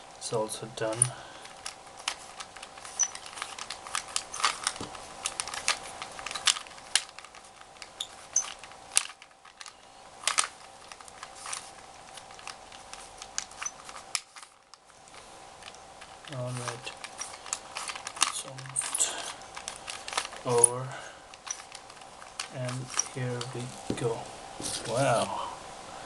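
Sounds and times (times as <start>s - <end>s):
faint steady hum: 0.0s - 26.0s
plastic cube clicking as turned: 0.9s - 20.5s.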